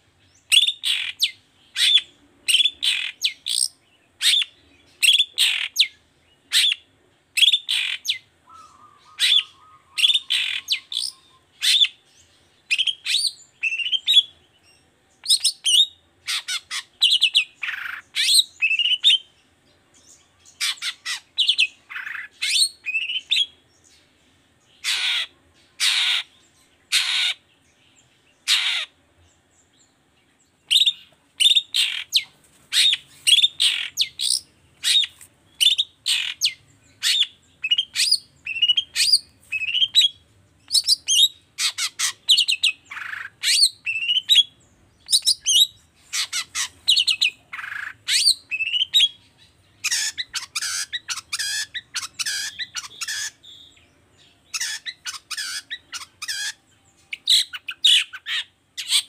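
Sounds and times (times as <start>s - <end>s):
harsh bird calls: 0.0s - 59.0s
bird chattering calls: 0.5s - 5.9s, 7.4s - 12.0s, 15.3s - 19.2s, 20.6s - 23.5s, 24.8s - 27.4s, 28.4s - 29.0s, 30.7s - 53.6s, 54.5s - 59.0s.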